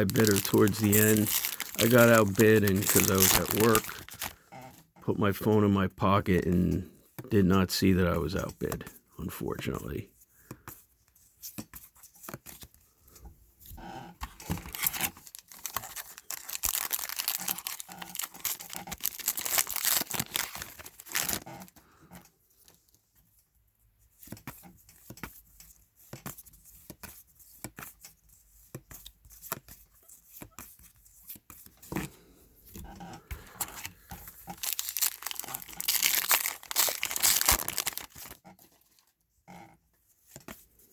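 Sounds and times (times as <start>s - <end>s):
wrapper tearing and crinkling: 0.0s - 4.4s, 14.3s - 21.7s, 33.6s - 39.1s.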